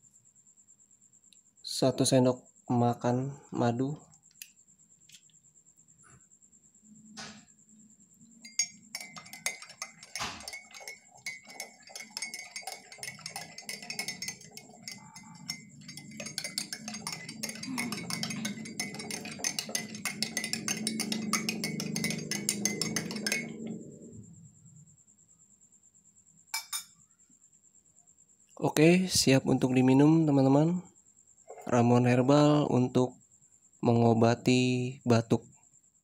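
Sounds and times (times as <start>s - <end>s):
liquid swirling: 8.4s - 24.2s
spoon clinking against glass: 8.4s - 24.2s, 26.6s - 27.0s.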